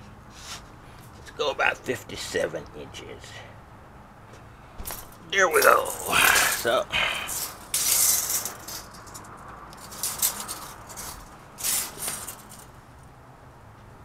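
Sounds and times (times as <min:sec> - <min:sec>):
scraping and rustling handling: 0:04.8 - 0:12.8.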